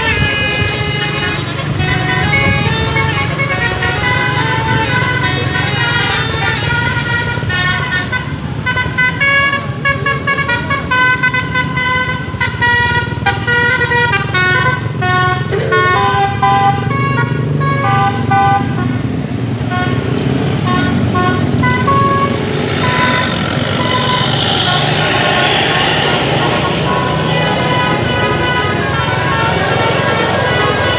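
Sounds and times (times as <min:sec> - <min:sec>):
bus engine rumbling: 0:00.0 - 0:30.9
musical air horn melody: 0:00.0 - 0:30.9.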